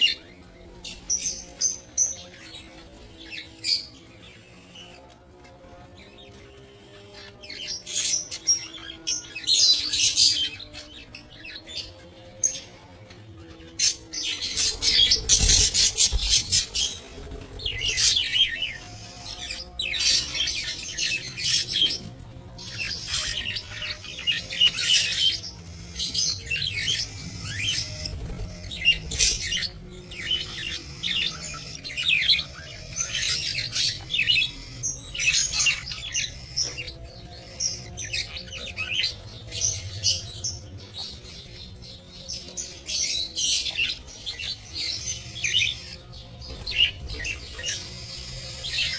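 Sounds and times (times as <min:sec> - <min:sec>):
budgerigars chattering and squawking: 0:13.4 - 0:48.9.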